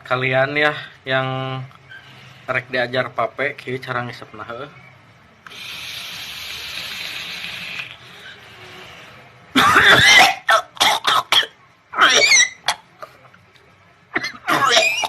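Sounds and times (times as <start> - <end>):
steady hiss: 5.4 - 9.4
person coughing hard: 9.5 - 12.9, 14.2 - 15.0.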